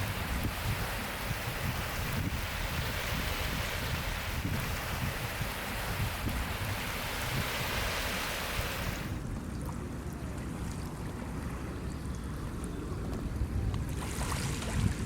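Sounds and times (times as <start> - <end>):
sea water washing: 0.0 - 15.0
wind rumbling on microphone: 0.0 - 15.0.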